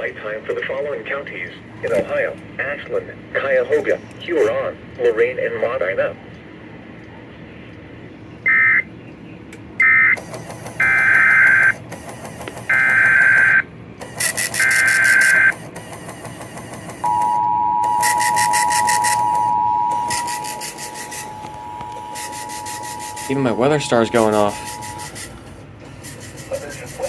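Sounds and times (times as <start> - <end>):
screeching data bursts: 14.2 - 15.6, 17.1 - 25.4
two-tone attention signal: 17.0 - 25.2
harsh digital bursts: 17.2 - 25.4.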